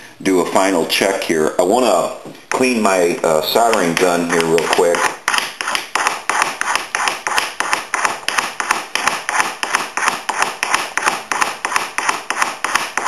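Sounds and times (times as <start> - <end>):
rapid sharp taps: 3.6 - 13.0.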